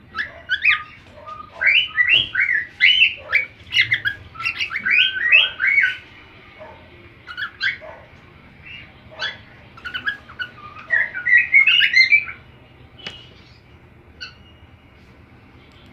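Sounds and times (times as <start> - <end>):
cockatiel whistling and chirping: 0.1 - 6.1, 7.2 - 7.9, 8.6 - 12.4, 14.2 - 14.6.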